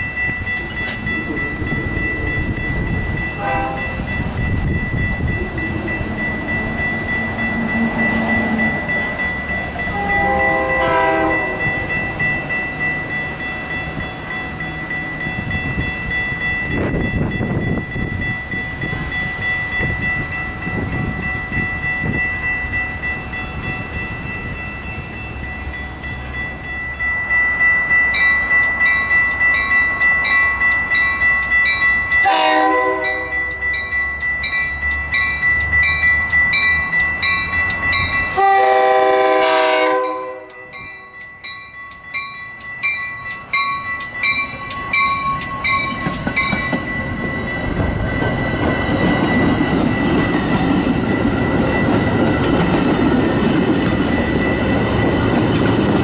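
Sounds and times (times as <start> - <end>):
bell dinging: 0.0 - 38.6, 40.0 - 53.4
train rumbling: 0.0 - 56.0
train horn blasts: 3.4 - 4.0, 9.8 - 11.9, 32.2 - 33.5, 38.3 - 40.7.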